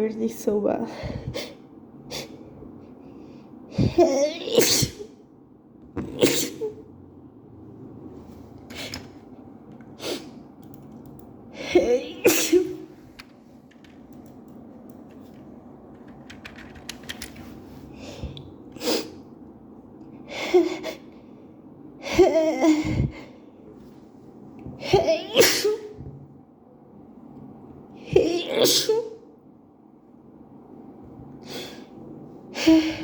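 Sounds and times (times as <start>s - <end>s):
woman sneezing: 3.8s - 5.2s, 6.1s - 6.8s, 11.7s - 12.9s, 24.8s - 26.0s, 28.1s - 29.2s.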